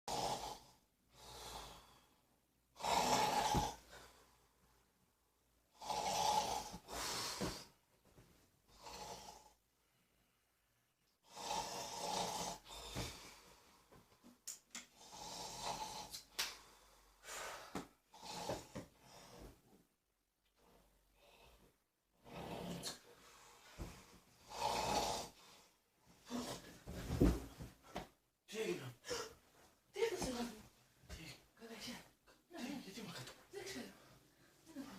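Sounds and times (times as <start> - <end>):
man snoring: 0.1 - 2.0, 2.8 - 3.8, 5.7 - 7.2, 8.7 - 9.6, 11.2 - 12.9, 15.0 - 16.2, 18.1 - 18.7, 24.4 - 25.4.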